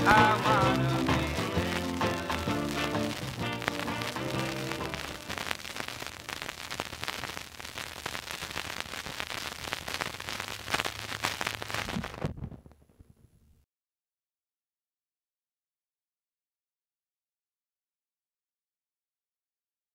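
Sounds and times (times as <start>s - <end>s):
song on vinyl record: 0.0s - 12.6s
vinyl surface hiss and crackle: 0.0s - 13.4s.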